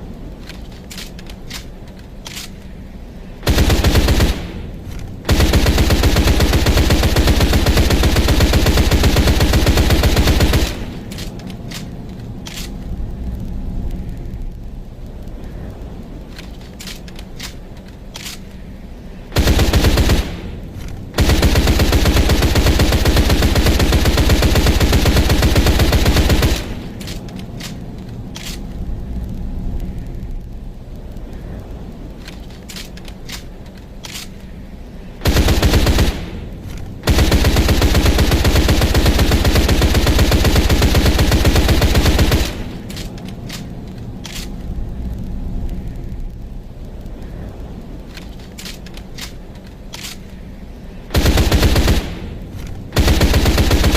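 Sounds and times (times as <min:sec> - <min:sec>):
gun clicks and rattles: 0:00.0 - 0:13.3, 0:15.6 - 0:30.2, 0:31.0 - 0:53.9
submachine gun firing full-auto: 0:03.4 - 0:04.6, 0:05.3 - 0:10.9, 0:19.4 - 0:20.5, 0:21.2 - 0:26.8, 0:35.2 - 0:36.4, 0:37.0 - 0:42.8, 0:51.1 - 0:52.3, 0:53.0 - 0:53.9.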